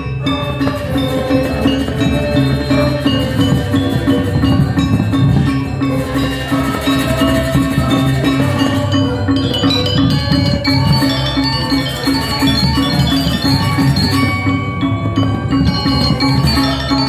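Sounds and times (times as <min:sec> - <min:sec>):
metal mallet percussion runs: 0:00.0 - 0:17.0.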